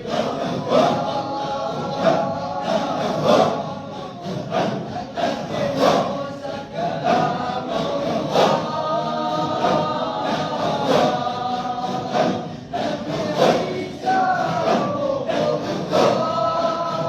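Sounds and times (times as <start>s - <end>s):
group chanting in unison: 0.0s - 17.0s.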